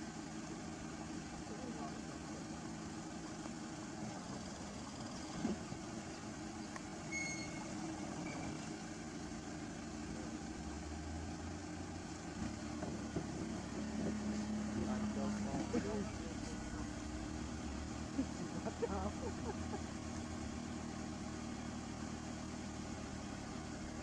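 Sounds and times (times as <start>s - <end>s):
heavy machine engine idling: 0.0s - 24.0s
brief high tone: 7.1s - 8.4s.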